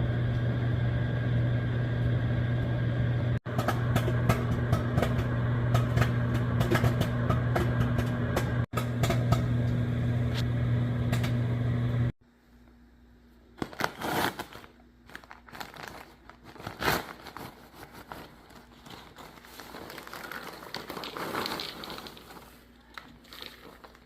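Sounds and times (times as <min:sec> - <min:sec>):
microwave oven humming: 0:00.0 - 0:13.8
paper crinkling and rustling: 0:13.6 - 0:24.0
popcorn kernels popping: 0:19.4 - 0:24.0.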